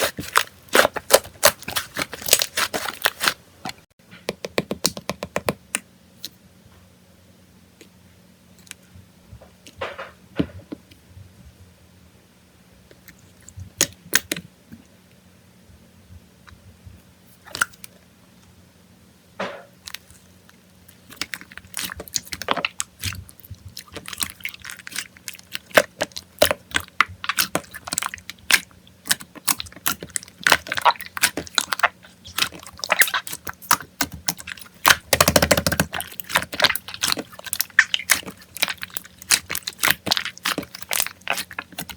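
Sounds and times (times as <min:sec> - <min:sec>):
slime squeezed with sticky pops: 0:21.0 - 0:41.9.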